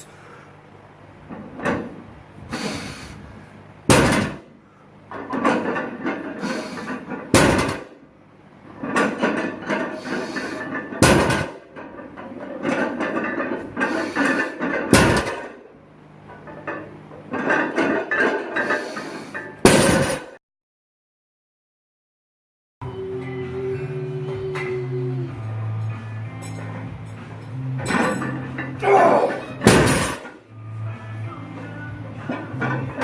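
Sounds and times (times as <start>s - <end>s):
barbell striking floor: 3.9s - 4.5s, 7.3s - 8.0s, 11.0s - 11.6s, 14.4s - 15.6s, 19.6s - 20.4s, 27.8s - 30.4s
metal clattering: 8.7s - 15.6s, 16.3s - 20.4s, 25.8s - 30.5s, 31.6s - 33.0s.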